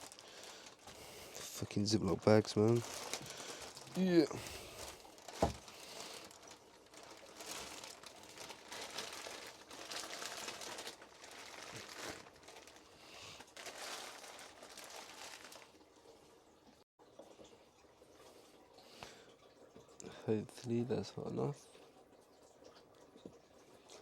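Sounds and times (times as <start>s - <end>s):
plastic bag crinkling: 0.0s - 16.1s.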